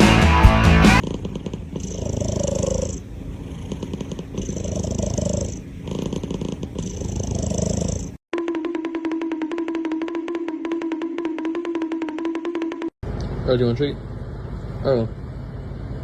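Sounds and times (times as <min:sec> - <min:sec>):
cat purring: 0:01.0 - 0:08.2.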